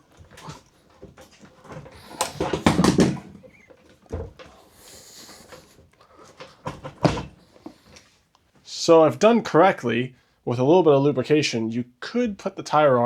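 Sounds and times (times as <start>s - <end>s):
rubber tire rubbing and knocking on rim: 0.1s - 4.6s.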